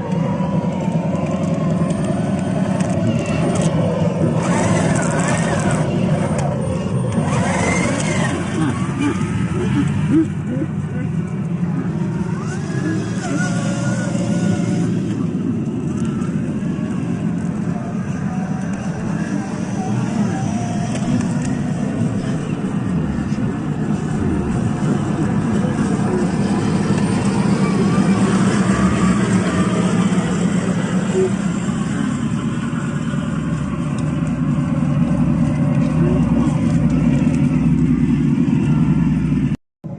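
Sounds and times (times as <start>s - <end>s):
faint voices: 0.0s - 39.5s
vehicle engine running: 0.0s - 39.9s.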